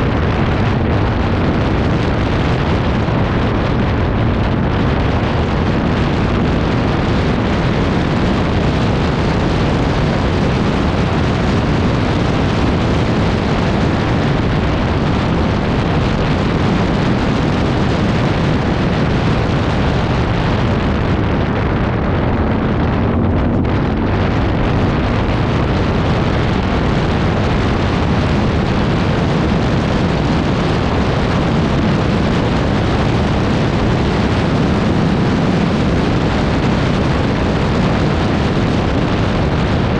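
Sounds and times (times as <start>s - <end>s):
wind buffeting microphone: 0.0s - 39.9s.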